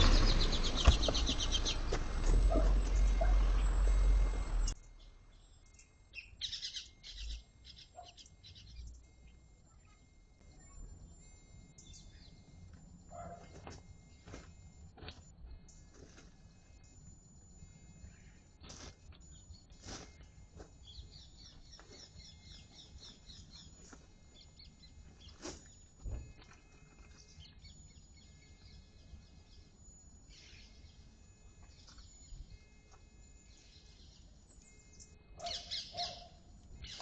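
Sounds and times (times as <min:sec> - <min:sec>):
small birds chirping: 0:00.0 - 0:37.0.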